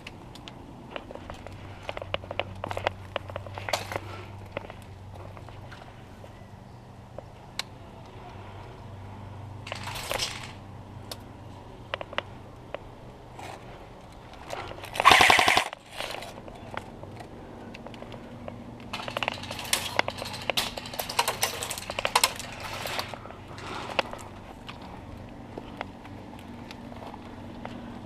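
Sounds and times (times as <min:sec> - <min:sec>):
airsoft gun shots: 0:15.0 - 0:15.8
rapid airsoft burst: 0:15.0 - 0:15.8.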